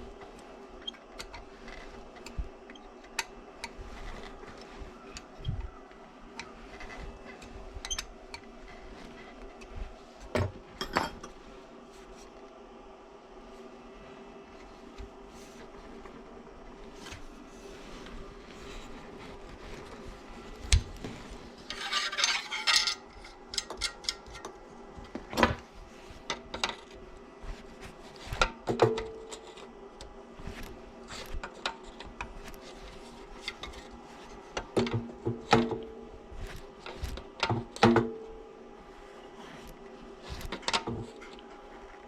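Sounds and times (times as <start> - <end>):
metal tools clinking and scraping: 10.8 - 11.4, 21.6 - 24.5.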